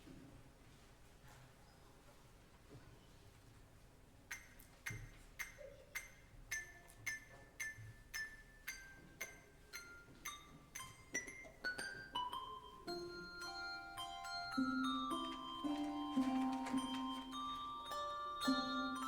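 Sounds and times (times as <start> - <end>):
handbell choir melody: 6.0 - 19.0.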